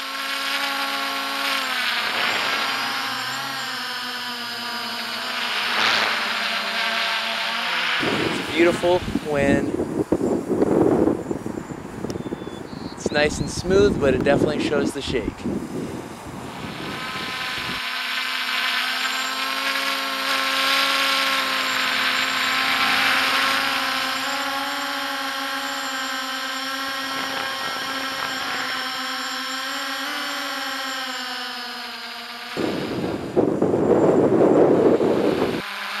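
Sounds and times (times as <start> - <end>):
drone motors whining: 0.0 - 36.0
wind buffeting: 7.2 - 17.8, 20.1 - 29.7, 32.6 - 35.6.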